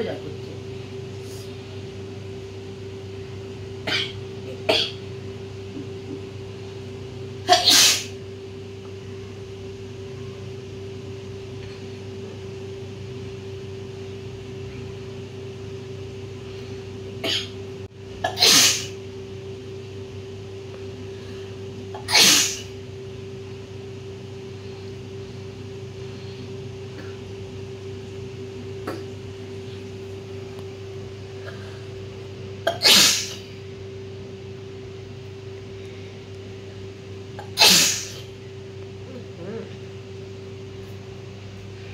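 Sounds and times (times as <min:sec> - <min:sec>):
steady low hum: 0:00.0 - 0:41.9
woman sneezing: 0:07.5 - 0:08.2, 0:18.3 - 0:19.0, 0:22.0 - 0:22.7, 0:32.7 - 0:33.5, 0:37.5 - 0:38.3.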